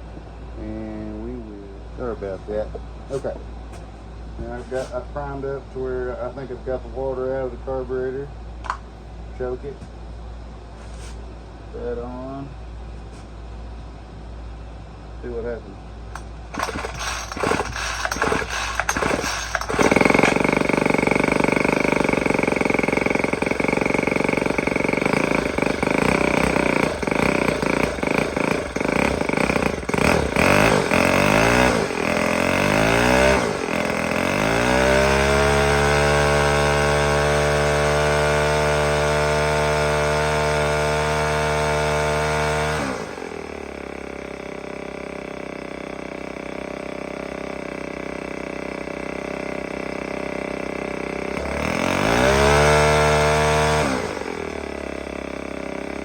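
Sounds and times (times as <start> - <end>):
engine idling: 14.5 - 37.2, 42.9 - 56.0
string trimmer engine pull-starting: 16.2 - 56.0.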